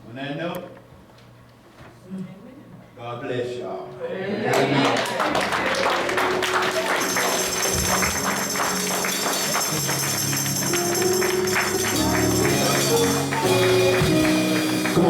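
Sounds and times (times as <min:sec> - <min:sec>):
church music with held chords: 0:05.8 - 0:15.0
tambourine beat: 0:06.8 - 0:15.0.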